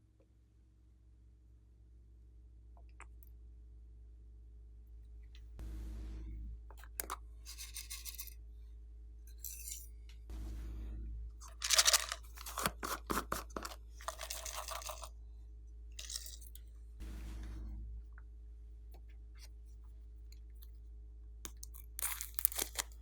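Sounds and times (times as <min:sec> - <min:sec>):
slime crackling and popping: 0:21.5 - 0:23.0.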